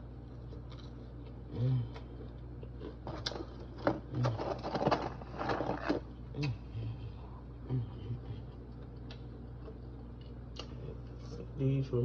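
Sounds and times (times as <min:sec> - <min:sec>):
chewing crunchy fries: 0:00.0 - 0:11.6
person humming: 0:01.5 - 0:02.0.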